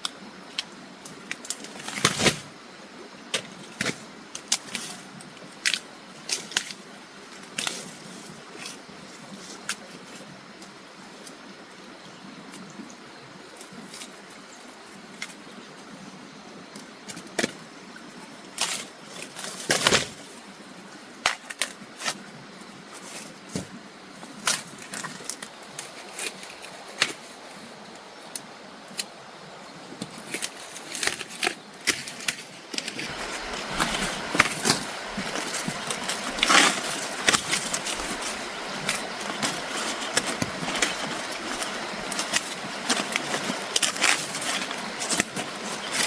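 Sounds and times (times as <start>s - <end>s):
steady hiss: 22.0s - 46.0s
rustling clicks and knocks: 30.3s - 46.0s.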